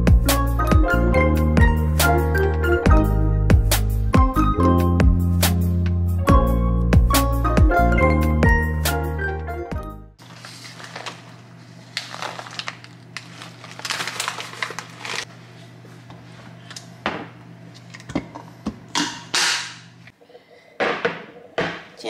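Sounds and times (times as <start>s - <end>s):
clicks and rustles of packaging: 10.2s - 15.3s.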